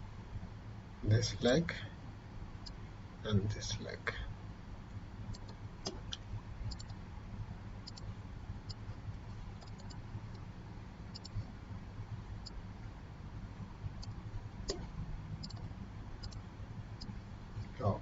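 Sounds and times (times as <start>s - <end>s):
low steady hum: 0.0s - 18.0s
computer mouse clicking: 6.7s - 7.0s, 7.9s - 8.1s, 9.6s - 10.0s, 15.4s - 16.4s.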